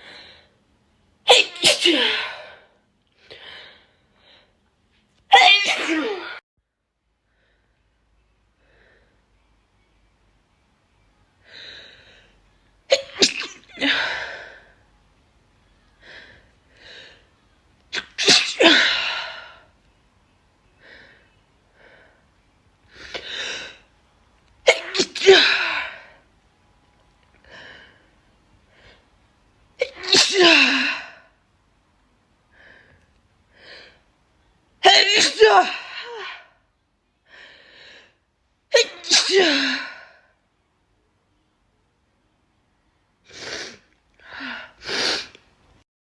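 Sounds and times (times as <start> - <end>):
woman sneezing: 1.3 - 2.5, 5.3 - 6.4, 12.9 - 14.1, 17.9 - 19.3, 24.7 - 26.0, 29.8 - 31.1, 34.8 - 36.4, 38.7 - 40.0.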